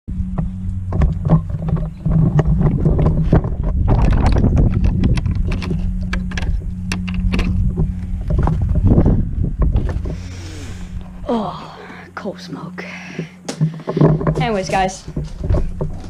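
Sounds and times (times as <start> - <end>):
low motor hum: 0.1 - 16.0
sharp clicks and knocks: 0.3 - 10.2, 13.1 - 16.0.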